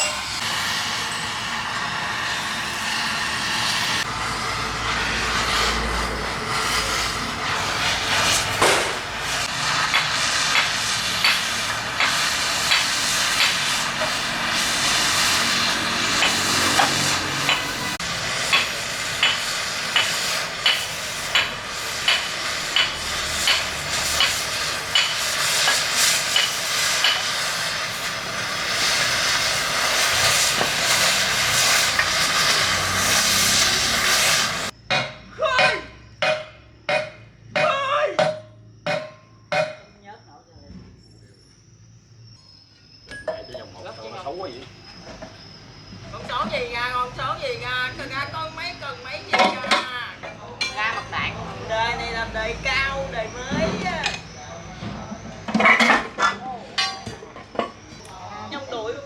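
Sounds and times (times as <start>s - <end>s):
gas cutting torch hissing: 0.0s - 34.8s, 41.6s - 59.0s
sharp metallic ticks: 18.4s - 27.4s
strikes on metal: 34.9s - 39.9s.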